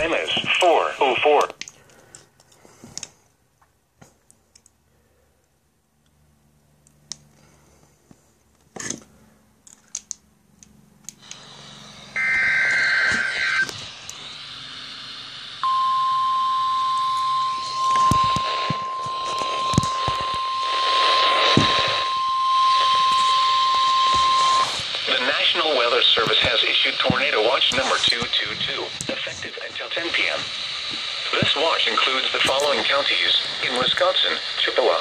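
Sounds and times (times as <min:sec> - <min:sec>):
radio hiss: 0:00.0 - 0:01.9, 0:11.2 - 0:35.0
short data burst: 0:11.3 - 0:34.4.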